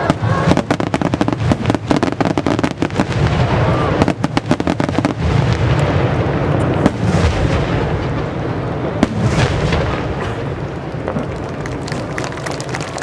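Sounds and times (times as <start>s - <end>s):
sharp firework bangs: 0.0s - 11.9s
fireworks rumbling and crackling: 0.0s - 13.0s.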